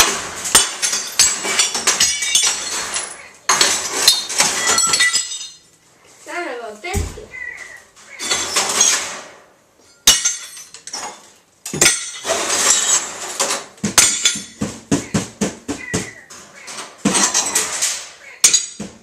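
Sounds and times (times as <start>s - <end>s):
sledgehammer smashing television: 0.0s - 5.6s, 11.7s - 15.9s
broken glass clattering: 0.0s - 5.7s, 8.2s - 14.7s, 16.7s - 19.0s.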